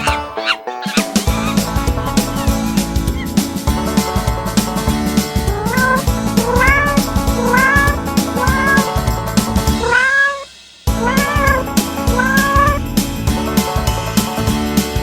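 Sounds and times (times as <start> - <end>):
background music with steady beat: 0.0 - 15.0
cat meowing: 5.5 - 9.0, 9.6 - 12.8.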